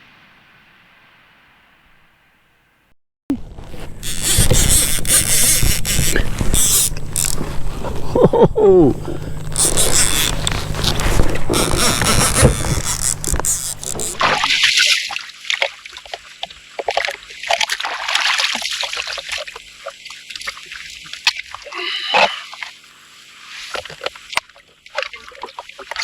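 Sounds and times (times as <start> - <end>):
water splashing and sloshing: 9.2 - 26.0.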